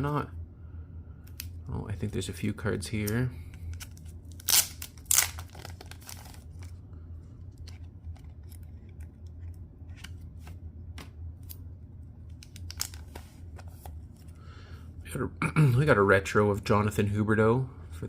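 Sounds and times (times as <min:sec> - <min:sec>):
packaging crinkling: 0:03.7 - 0:06.8
packaging ripping: 0:03.8 - 0:06.7.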